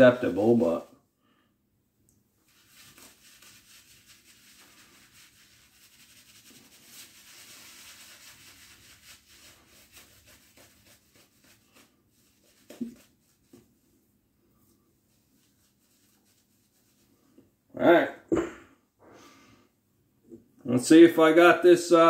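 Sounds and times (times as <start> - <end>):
shaving brush rubbing lather: 0.0 - 0.9, 2.4 - 13.9, 14.5 - 17.4.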